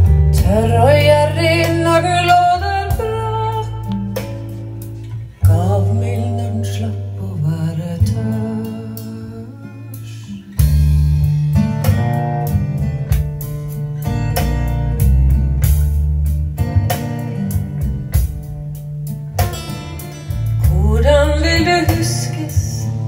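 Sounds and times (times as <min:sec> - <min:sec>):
person singing: 0:00.0 - 0:04.2, 0:05.4 - 0:10.6, 0:20.6 - 0:23.0
plucked guitar: 0:00.0 - 0:23.0
steady bass line: 0:00.0 - 0:23.0.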